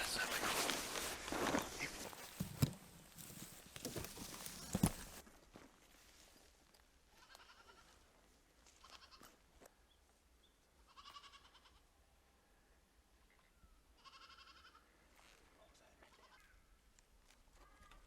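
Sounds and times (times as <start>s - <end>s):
faint goats bleating: 7.1s - 8.1s, 8.7s - 9.4s, 10.8s - 11.9s, 14.0s - 14.9s, 15.7s - 16.7s.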